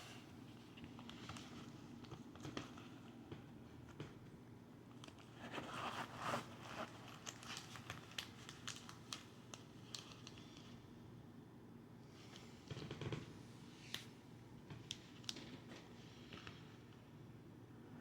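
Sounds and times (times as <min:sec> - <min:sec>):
packaging crinkling rustle: 0:05.0 - 0:10.8.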